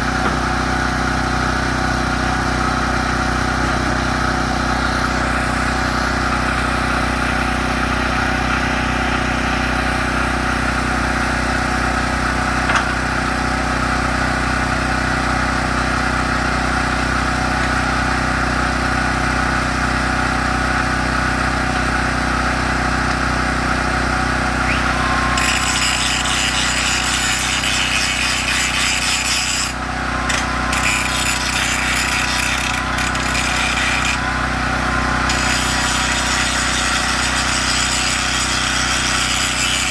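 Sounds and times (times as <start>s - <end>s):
power tool running: 0.0s - 39.9s
metal grinding hiss: 24.7s - 34.2s, 35.3s - 39.9s.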